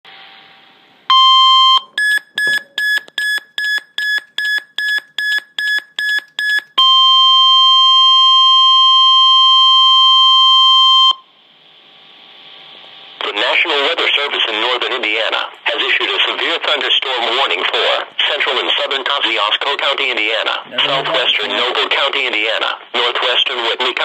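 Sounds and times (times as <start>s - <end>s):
short high beeps: 1.1s - 9.0s
long steady attention tone: 1.1s - 11.4s.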